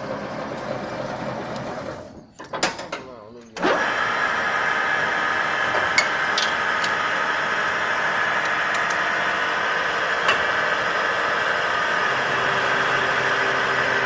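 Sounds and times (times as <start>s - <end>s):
pump motor humming: 3.6s - 14.0s.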